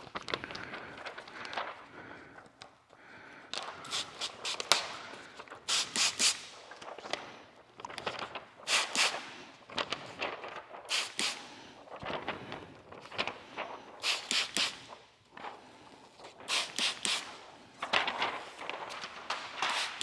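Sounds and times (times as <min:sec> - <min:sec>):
spray bottle squirting: 0:03.8 - 0:04.9, 0:05.7 - 0:06.5, 0:08.7 - 0:09.2, 0:10.9 - 0:11.4, 0:14.0 - 0:14.8, 0:16.5 - 0:17.3.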